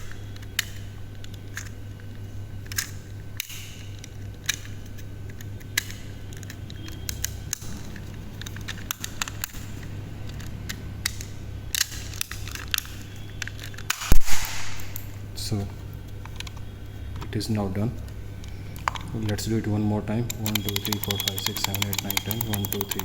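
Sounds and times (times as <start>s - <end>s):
plastic clicks and snaps: 20.3s - 23.0s.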